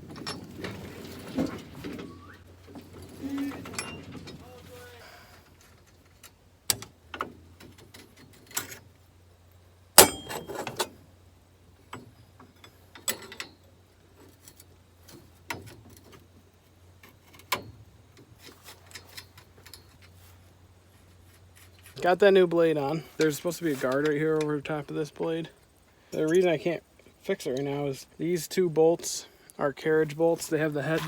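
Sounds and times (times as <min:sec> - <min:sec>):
metal tools clinking and knocking: 0:02.7 - 0:04.9.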